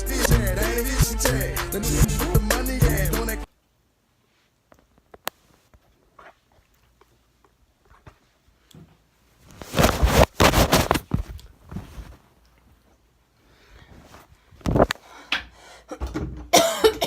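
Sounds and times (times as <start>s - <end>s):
person coughing hard: 16.5s - 17.0s.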